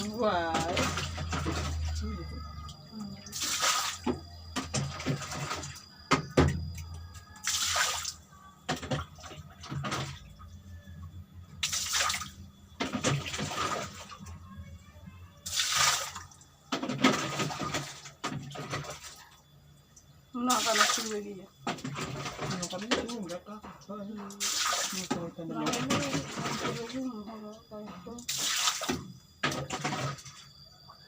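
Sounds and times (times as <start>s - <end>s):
water splashing: 0.0s - 5.9s, 7.4s - 10.2s, 11.6s - 14.2s, 15.5s - 19.2s, 20.4s - 23.4s, 24.4s - 27.0s, 28.3s - 30.5s.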